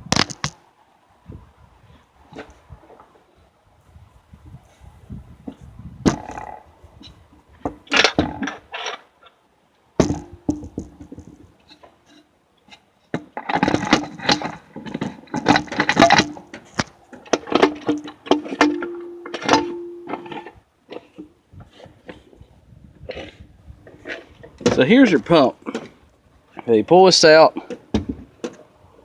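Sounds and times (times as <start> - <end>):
metal parts knocking and clinking: 13.5 - 20.6.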